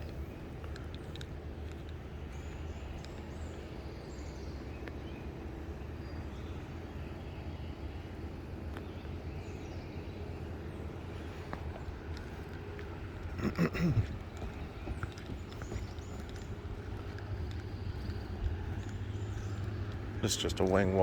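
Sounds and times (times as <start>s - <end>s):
faint clicks: 0.0s - 3.3s, 11.5s - 20.8s
diesel engine droning: 0.0s - 21.0s.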